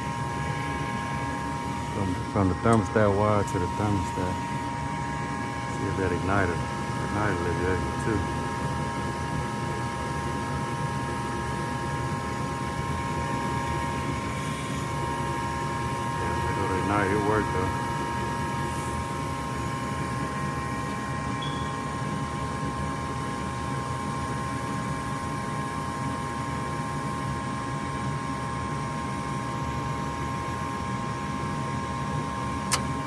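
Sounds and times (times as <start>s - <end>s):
furnace low rumble: 0.0s - 25.0s
steady high whine: 0.0s - 26.8s
sharp click: 32.7s - 32.9s.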